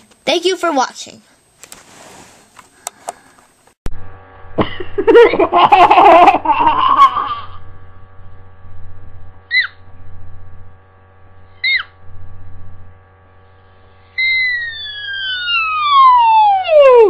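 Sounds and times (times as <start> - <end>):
low steady hum: 0.0 - 17.0
high falling whistle tone: 14.1 - 17.0.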